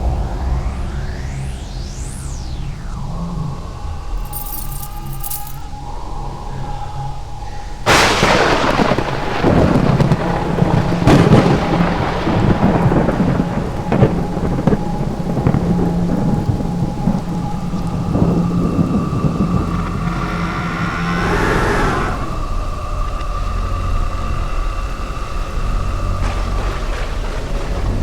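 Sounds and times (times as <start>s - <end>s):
steady rain: 7.2s - 28.0s
thunderclap: 7.9s - 17.2s
rolling thunder rumble: 7.9s - 28.0s.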